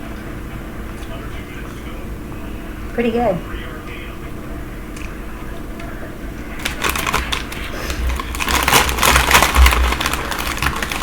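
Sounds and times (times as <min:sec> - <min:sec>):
snack food crunching: 0:06.6 - 0:11.0.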